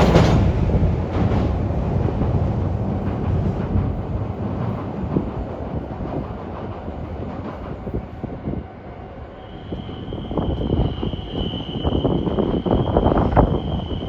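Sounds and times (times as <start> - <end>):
train wheels clattering over rail joints: 0.0 - 8.0
low train rumble: 0.0 - 14.0.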